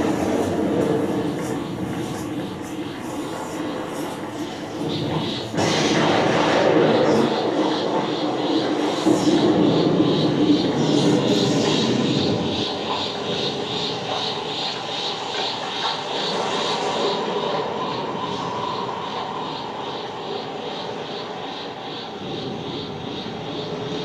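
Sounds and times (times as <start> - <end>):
pulsing jet-like rushing hum: 0.0 - 24.0.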